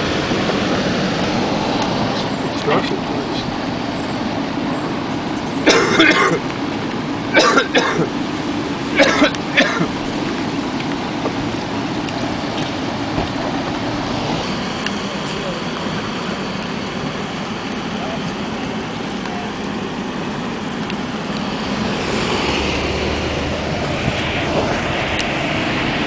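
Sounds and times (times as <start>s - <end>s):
vehicle engine rumble: 0.0s - 26.0s
person coughing: 5.6s - 6.4s, 7.3s - 8.1s, 9.0s - 9.9s.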